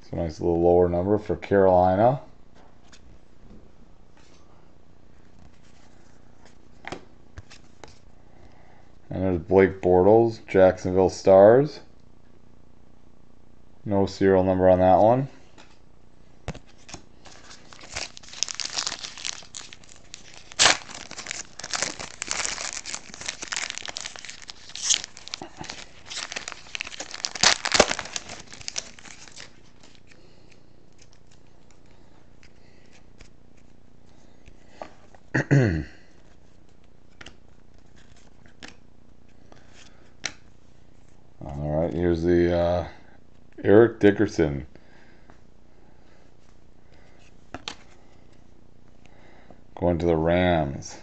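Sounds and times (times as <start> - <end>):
plastic wrapper crinkling and tearing: 16.6 - 30.2, 30.9 - 31.9.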